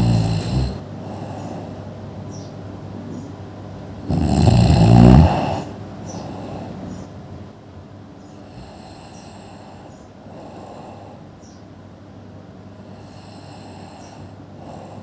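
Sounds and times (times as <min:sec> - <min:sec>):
person snoring with whistle: 0:00.0 - 0:00.8, 0:04.0 - 0:05.7
soft breaths: 0:00.0 - 0:02.5, 0:04.0 - 0:07.2, 0:08.3 - 0:11.6, 0:12.7 - 0:15.0.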